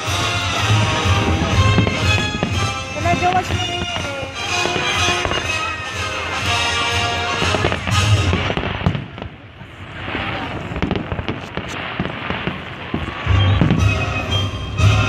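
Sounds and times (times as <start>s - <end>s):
music playing: 0.0s - 8.9s, 13.2s - 15.0s
fireworks popping and crackling: 0.0s - 15.0s.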